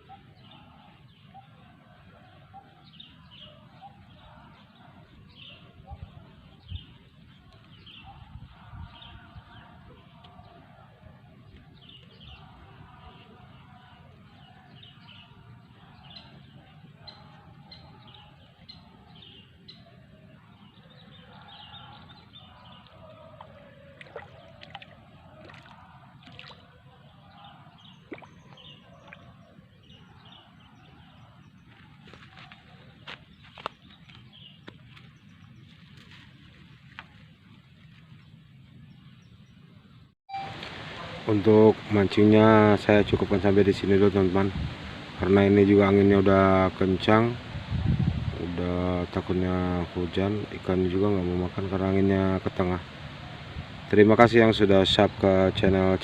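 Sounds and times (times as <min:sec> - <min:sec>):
birds chirping: 0:00.0 - 0:56.0
wind rumbling on microphone: 0:03.8 - 0:18.2, 0:40.6 - 0:56.0.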